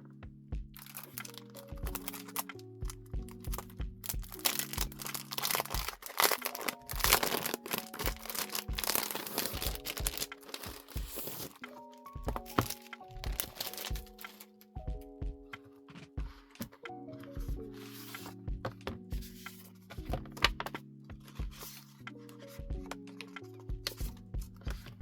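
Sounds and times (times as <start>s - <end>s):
soft background music: 0.0s - 25.0s
plastic and paper crinkling: 0.8s - 14.7s.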